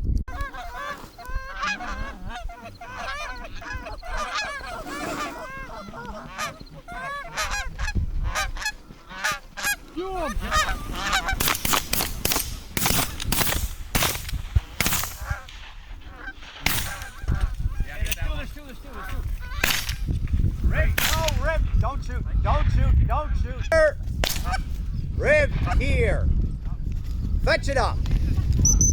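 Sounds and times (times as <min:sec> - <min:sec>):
geese honking and clucking: 0:00.3 - 0:20.1, 0:23.4 - 0:25.9.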